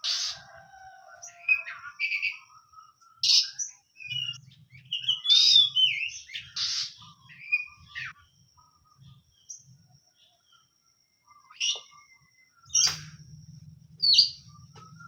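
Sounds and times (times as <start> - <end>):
bird calling harsh notes and whistles: 3.2 - 8.1.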